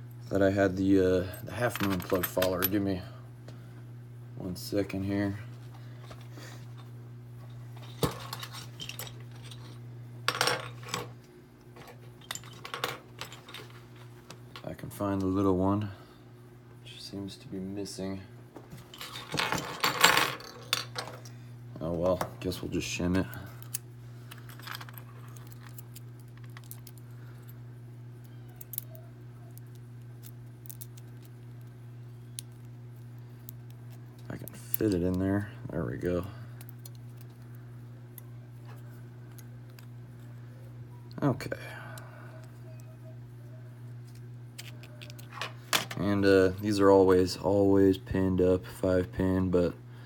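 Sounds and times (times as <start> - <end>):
small metal tools clinking: 7.8 - 11.1, 12.2 - 13.8.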